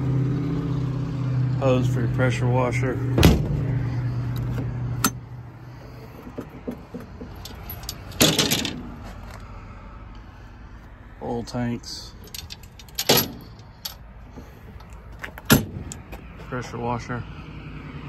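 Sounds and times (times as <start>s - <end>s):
light metallic clinks and rattles: 6.2s - 8.8s, 12.2s - 14.1s.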